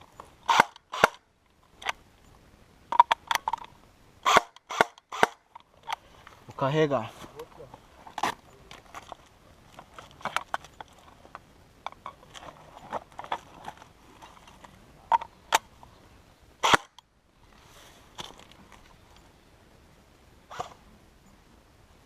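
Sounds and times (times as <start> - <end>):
sharp cracks: 0.4 - 1.2, 2.9 - 6.0, 16.6 - 17.0.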